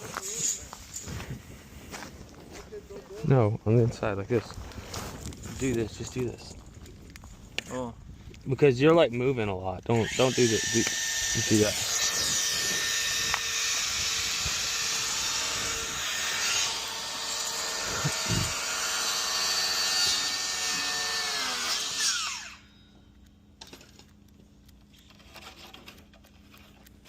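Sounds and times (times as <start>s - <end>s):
power drill motor whine: 10.0s - 23.0s.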